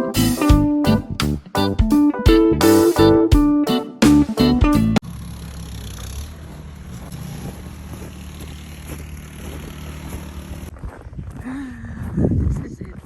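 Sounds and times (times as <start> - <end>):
guitar music: 0.0 - 5.0
vehicle engine idling: 5.0 - 10.7.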